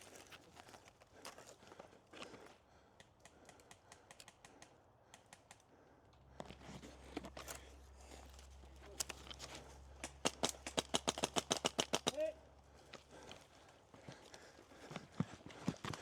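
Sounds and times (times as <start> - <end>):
small clicks and ticks: 3.0 - 5.7.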